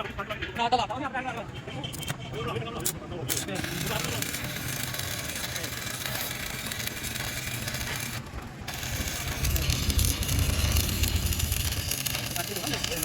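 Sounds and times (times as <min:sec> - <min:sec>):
arc welding crackling hiss: 0:03.3 - 0:13.0
low hum: 0:08.7 - 0:13.0.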